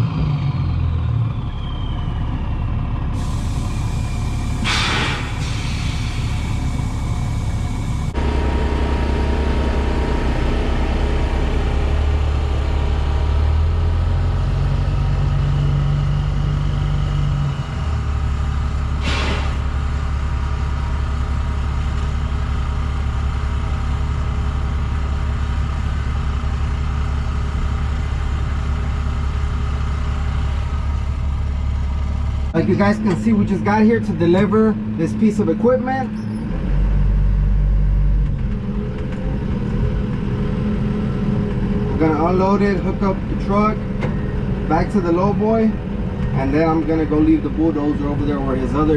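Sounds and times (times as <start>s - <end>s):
diesel truck engine running: 0.0s - 48.9s
hiss of air: 3.2s - 8.0s, 19.0s - 19.7s.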